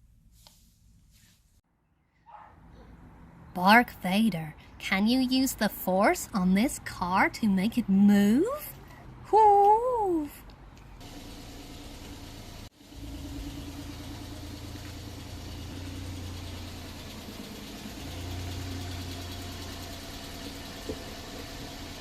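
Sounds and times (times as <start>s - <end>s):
car engine idling: 11.0s - 22.0s.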